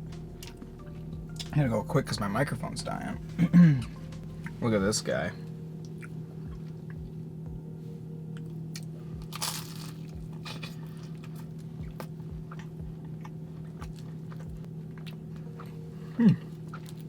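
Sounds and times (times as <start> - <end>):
low electrical hum: 0.0 - 17.0
chewing with mouth clicks: 8.4 - 17.0
crunch of biting pastry: 8.8 - 15.8
person humming mm: 16.0 - 16.6.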